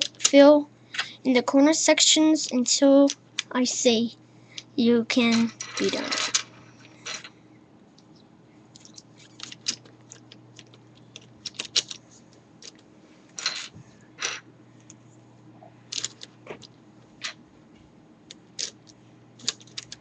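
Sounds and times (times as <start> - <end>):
steady low hum: 0.0 - 20.0
plastic puzzle pieces clicking: 8.8 - 12.0, 15.9 - 16.3, 18.3 - 20.0.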